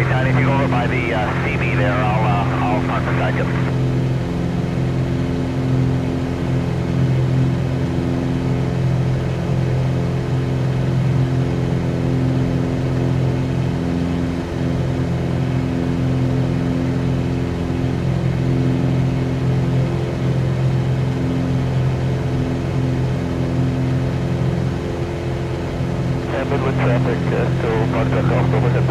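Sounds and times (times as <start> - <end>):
airplane engine and propeller drone: 0.0 - 28.9.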